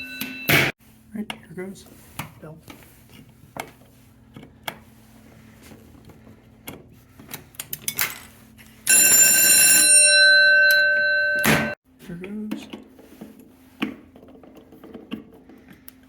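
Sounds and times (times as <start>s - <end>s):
fire alarm bell ringing: 0.0s - 0.7s, 8.8s - 11.8s.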